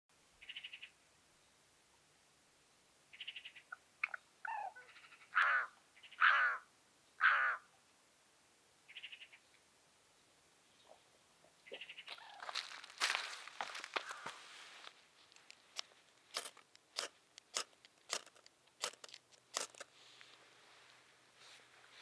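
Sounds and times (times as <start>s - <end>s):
loud bird calls: 3.1s - 7.7s, 10.8s - 13.2s
birds chattering: 10.7s - 14.4s.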